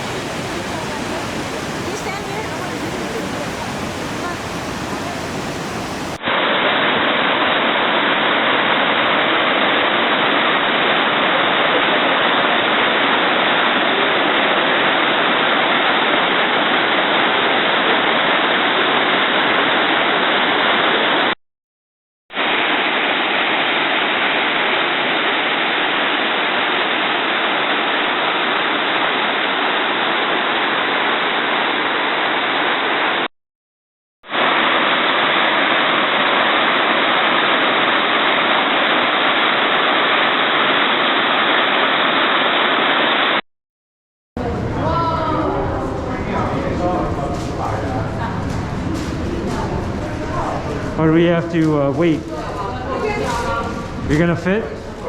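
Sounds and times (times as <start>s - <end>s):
waterfall rushing: 0.0s - 21.3s, 34.3s - 43.4s.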